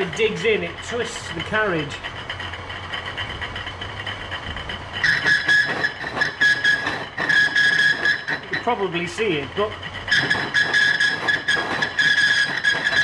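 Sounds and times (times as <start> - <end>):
lathe motor humming: 0.0 - 13.0
cutting tool screeching: 5.0 - 13.0.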